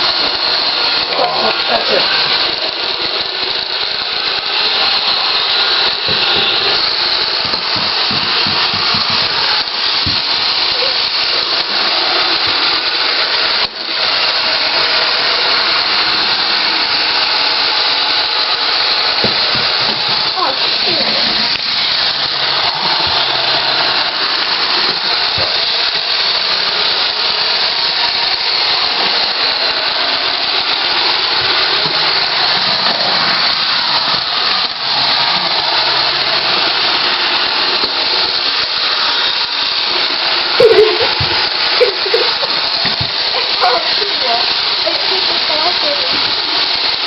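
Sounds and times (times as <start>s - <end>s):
robot vacuum running: 0.0s - 47.0s.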